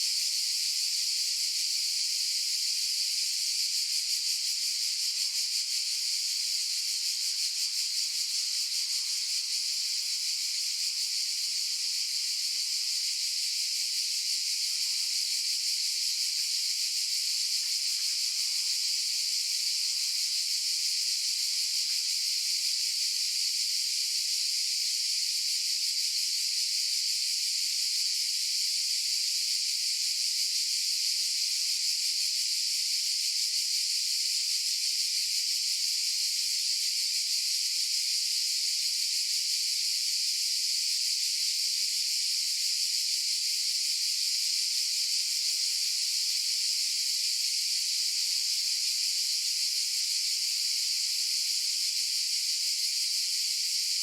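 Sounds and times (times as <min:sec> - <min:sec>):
cicadas buzzing: 0:14.2 - 0:22.8.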